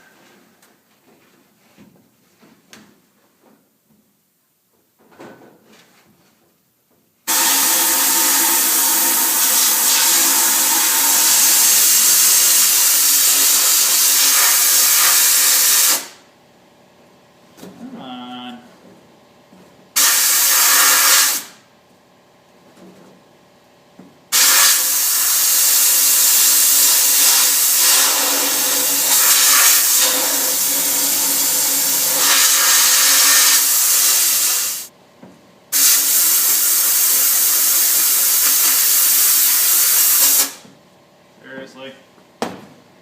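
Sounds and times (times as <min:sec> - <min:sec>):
sandblasting gun hissing: 0:07.3 - 0:16.2, 0:20.0 - 0:21.6, 0:24.3 - 0:34.9, 0:35.8 - 0:40.6.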